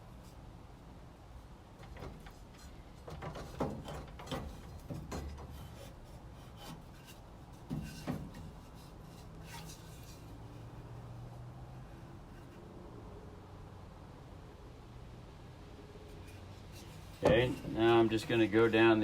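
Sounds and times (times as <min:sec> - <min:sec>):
wood board scraping and knocking: 0:01.9 - 0:10.2, 0:16.7 - 0:19.0.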